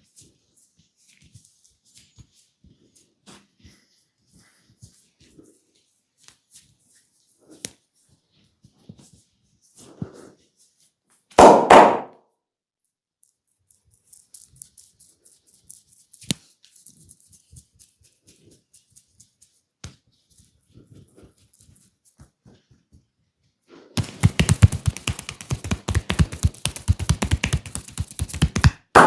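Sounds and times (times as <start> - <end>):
hands slapping skin: 24.0 - 29.0.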